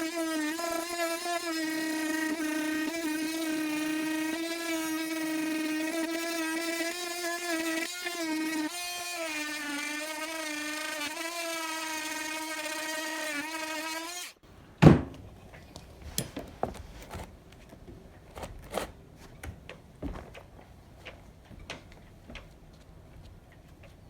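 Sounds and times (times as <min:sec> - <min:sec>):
oscillating multi-tool buzzing: 0:00.0 - 0:14.4.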